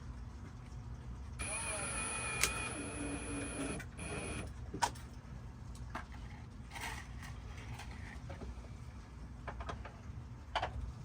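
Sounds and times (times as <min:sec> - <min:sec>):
power drill motor whining: 0:01.4 - 0:04.5.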